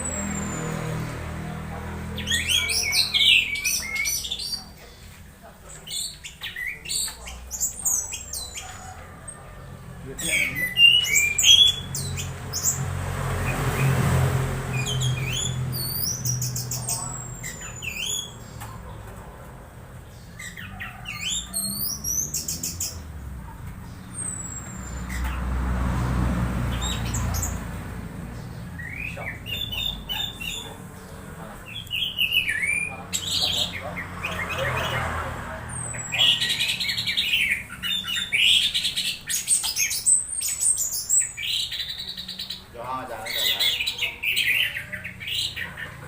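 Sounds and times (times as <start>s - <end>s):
bird chirping: 0.0s - 46.0s.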